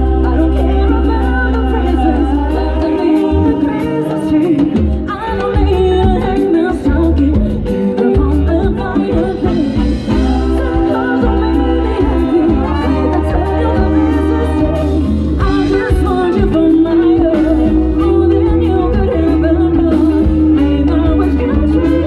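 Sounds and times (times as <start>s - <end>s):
latin band music: 0.0s - 22.0s
person singing: 0.0s - 22.0s.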